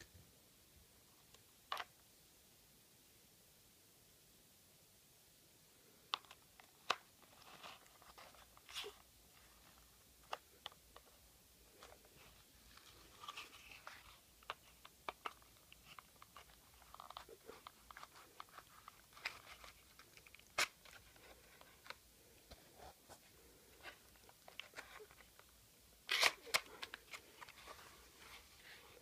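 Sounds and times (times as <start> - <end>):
paper toy gun clicking and crinkling: 26.0 - 27.6.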